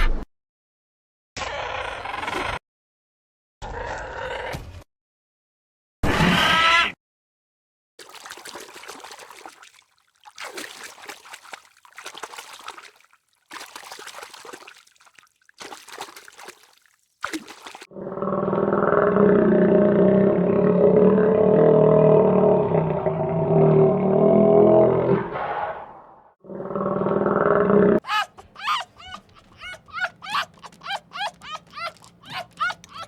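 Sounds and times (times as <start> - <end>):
animal long low call: 17.9 - 25.3.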